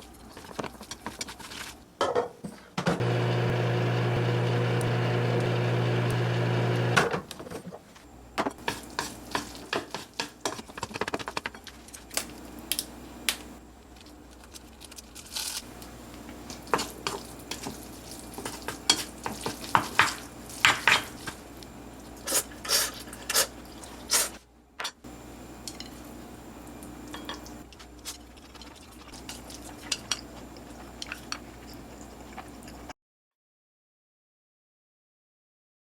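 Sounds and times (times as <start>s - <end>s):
microwave oven humming: 3.0s - 7.1s, 25.1s - 27.6s.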